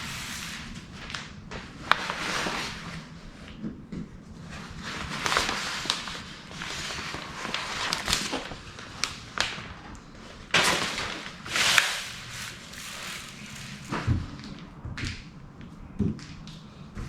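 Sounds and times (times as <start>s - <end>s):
hissing and scraping on vinyl: 11.4s - 14.0s.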